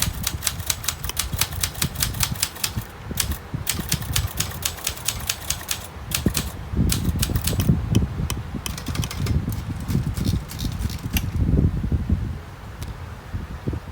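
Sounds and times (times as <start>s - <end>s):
typewriter keys striking: 0.0s - 7.8s, 8.7s - 11.4s.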